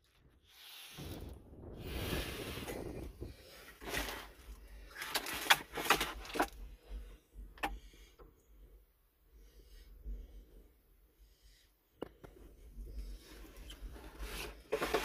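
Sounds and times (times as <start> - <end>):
brief rush of noise: 0.6 - 4.1.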